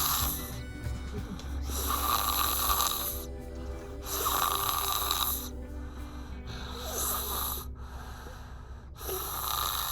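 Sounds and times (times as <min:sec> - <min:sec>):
child snoring: 0:00.0 - 0:00.5, 0:01.7 - 0:03.3, 0:04.1 - 0:05.6, 0:06.5 - 0:08.4, 0:09.0 - 0:09.9.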